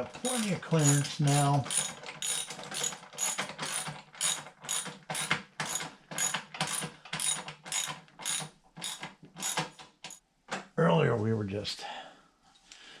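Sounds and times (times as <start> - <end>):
ratchet wrench clicking: 0.3 - 10.2.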